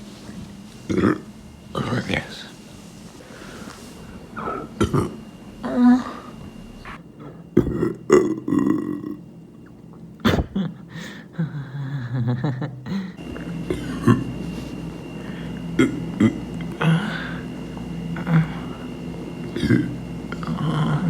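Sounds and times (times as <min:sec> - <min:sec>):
person burping: 0:00.9 - 0:01.3, 0:04.8 - 0:05.2, 0:07.2 - 0:09.2, 0:10.2 - 0:10.8, 0:12.9 - 0:14.4, 0:15.8 - 0:17.4, 0:19.5 - 0:21.0.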